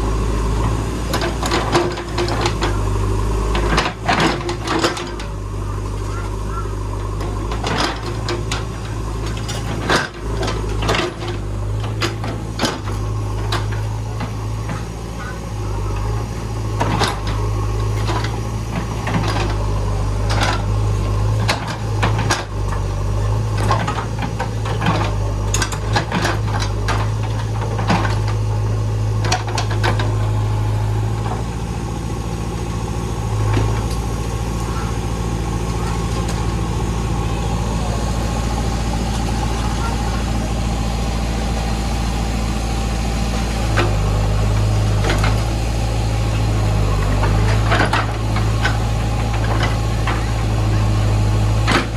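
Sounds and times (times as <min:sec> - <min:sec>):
diesel engine running: 0:00.0 - 0:51.9
sharp clanks and knocks: 0:01.1 - 0:02.9, 0:03.5 - 0:28.5, 0:29.1 - 0:30.4, 0:46.3 - 0:51.9.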